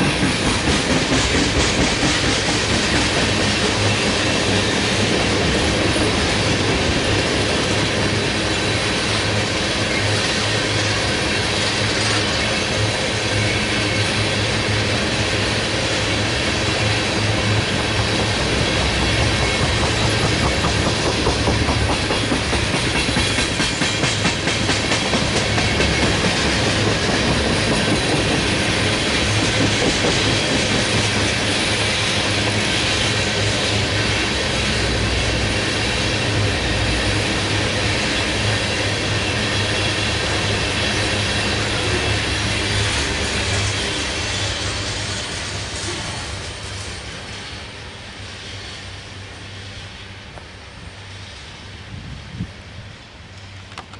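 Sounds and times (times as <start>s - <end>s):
train wheels rumbling on rail: 0.0s - 53.9s
wheels clacking over rail joints: 16.3s - 31.7s.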